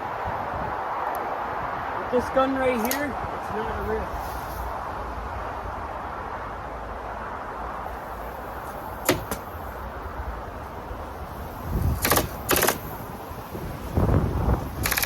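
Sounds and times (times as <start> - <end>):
roofing stapler clicks: 2.8 - 3.0, 9.0 - 9.5, 12.0 - 12.8
rapid stapling bursts: 9.0 - 9.5, 12.0 - 12.9, 14.8 - 15.0.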